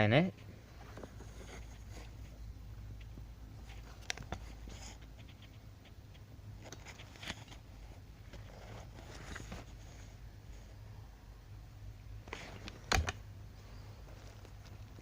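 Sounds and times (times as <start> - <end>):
low steady hum: 0.0 - 15.0
small clicks and rustles: 0.7 - 10.1, 14.0 - 15.0.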